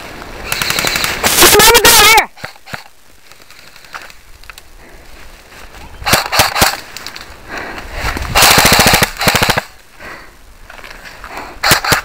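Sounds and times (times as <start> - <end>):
airsoft rifle bursts: 0.4 - 3.9, 6.0 - 7.2, 8.4 - 9.7, 11.6 - 12.0.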